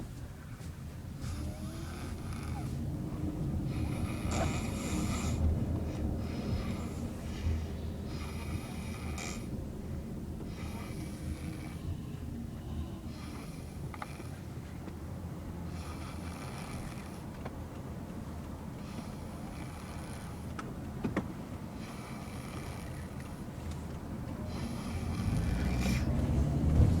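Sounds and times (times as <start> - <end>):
steady low rumble: 0.0 - 27.0
child snoring: 1.2 - 2.9, 3.6 - 9.6, 10.5 - 14.5, 15.7 - 17.4, 18.8 - 20.6, 21.7 - 23.5, 24.4 - 27.0.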